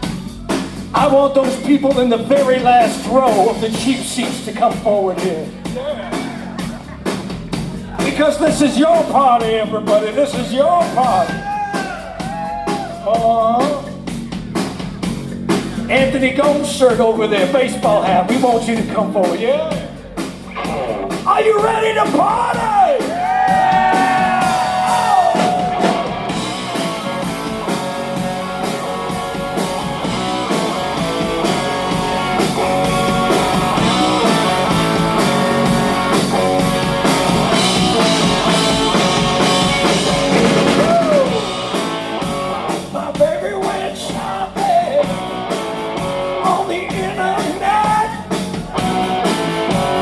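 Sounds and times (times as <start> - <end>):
bass guitar: 0.0 - 50.0
drums: 0.0 - 50.0
electric guitar lead: 19.8 - 21.7, 22.5 - 43.0.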